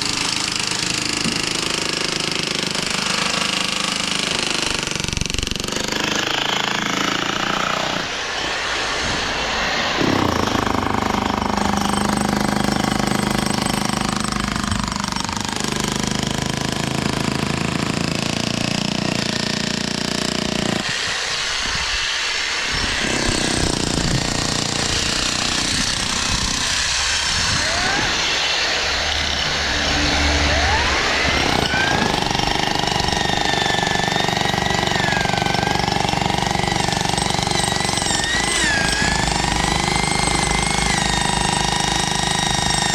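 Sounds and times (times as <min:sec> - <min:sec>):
jackhammer hammering: 0:00.0 - 0:08.1, 0:10.0 - 0:21.0, 0:22.7 - 0:42.9
wavering high whine: 0:27.0 - 0:31.8.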